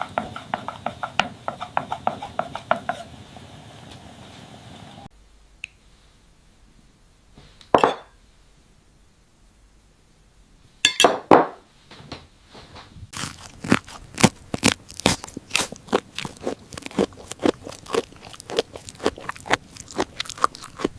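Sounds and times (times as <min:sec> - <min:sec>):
crunchy fried food being chewed: 0:13.1 - 0:20.9.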